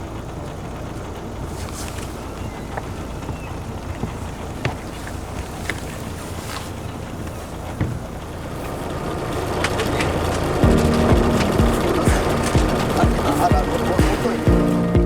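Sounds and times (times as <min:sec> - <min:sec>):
boat motor rumble: 0:00.0 - 0:15.0
short knocks: 0:07.7 - 0:08.2.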